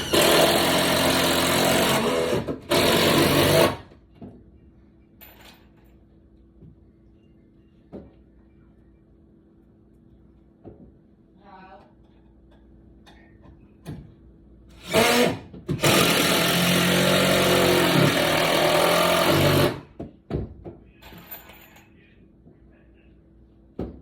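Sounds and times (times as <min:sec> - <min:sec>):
handheld power tool running: 0:00.0 - 0:03.8, 0:14.8 - 0:19.9.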